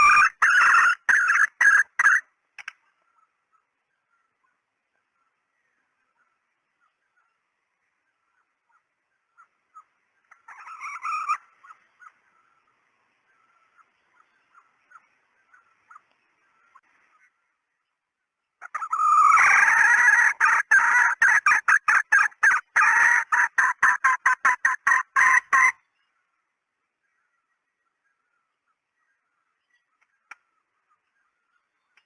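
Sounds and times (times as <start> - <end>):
junglefowl hen clucking and cackling: 0.0 - 4.6, 8.3 - 17.4, 18.6 - 25.9.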